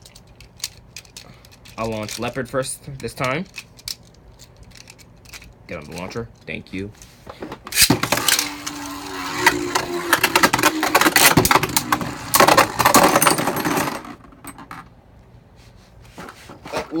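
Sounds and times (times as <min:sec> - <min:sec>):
spinning tops rattling and clashing: 0:03.1 - 0:06.1, 0:07.7 - 0:14.8
ripcord launchers pulled: 0:07.7 - 0:08.8.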